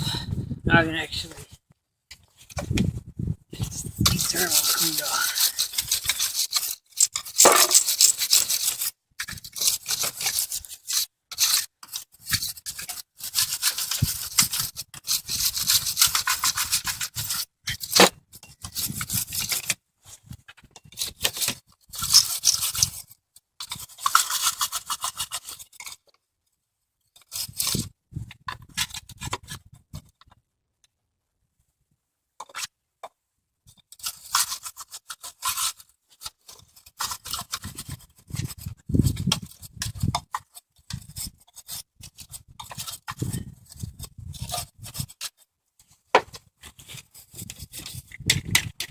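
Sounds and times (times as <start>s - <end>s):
wire brush scrubbing metal: 3.7s - 19.7s.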